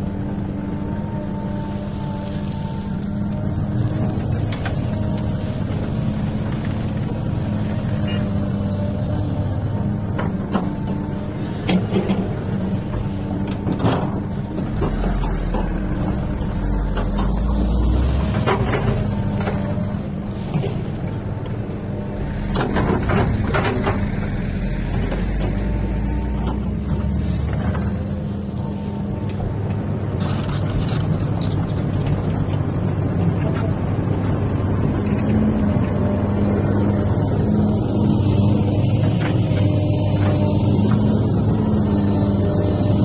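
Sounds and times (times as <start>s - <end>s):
excavator diesel engine running: 0.0s - 43.0s
excavator knocks and scrapes: 9.8s - 28.2s.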